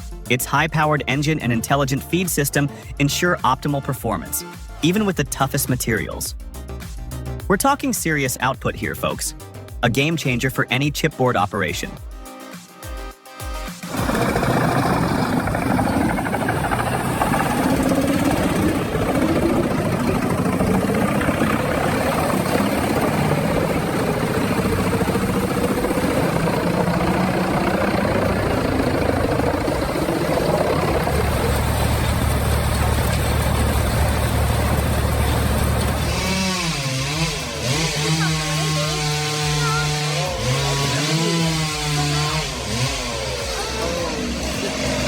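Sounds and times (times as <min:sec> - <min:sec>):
deep low hum: 0:13.9 - 0:36.3
wood chipper engine under load: 0:13.9 - 0:45.0.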